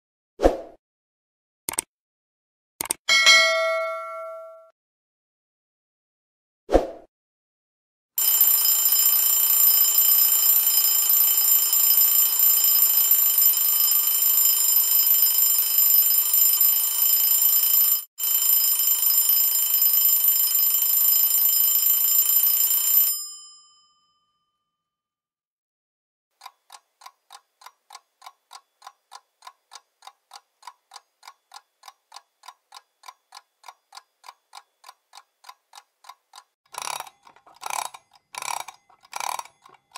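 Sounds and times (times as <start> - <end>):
alarm clock ringing: 8.2 - 24.0, 36.8 - 39.9
clock ticking: 26.4 - 39.9.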